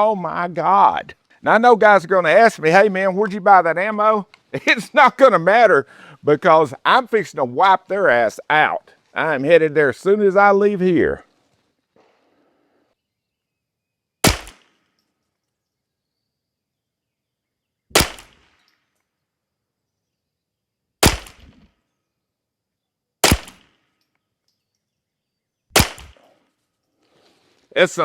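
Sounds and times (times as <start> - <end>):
rifle shots with echo: 14.2 - 14.8, 17.9 - 18.5, 21.0 - 21.6, 23.2 - 23.8, 25.7 - 26.4.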